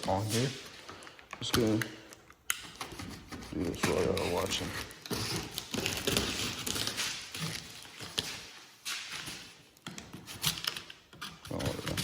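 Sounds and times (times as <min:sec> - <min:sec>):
packing tape tearing: 0:02.5 - 0:08.4.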